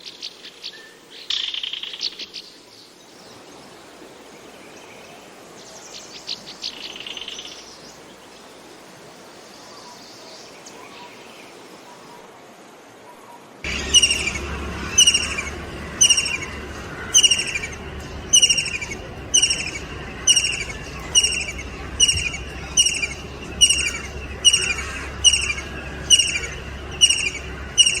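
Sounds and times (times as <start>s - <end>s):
low steady rumble: 13.6s - 28.0s
kingfisher calling: 13.7s - 28.0s.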